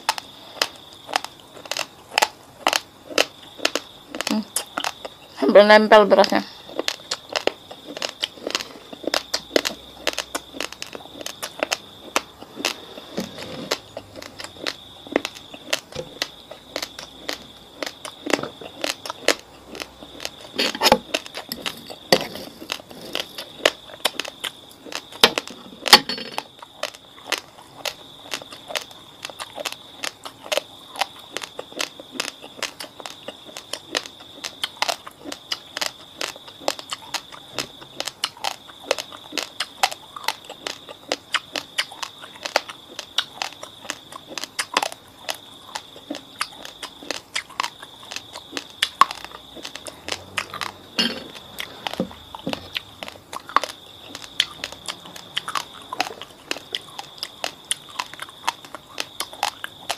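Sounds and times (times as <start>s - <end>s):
chewing crunchy rice: 0.0s - 5.4s, 6.1s - 59.9s.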